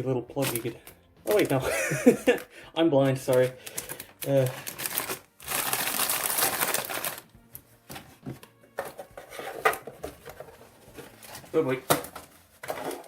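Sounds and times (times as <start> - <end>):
plastic packaging rustling: 0.4 - 2.4, 3.1 - 13.0.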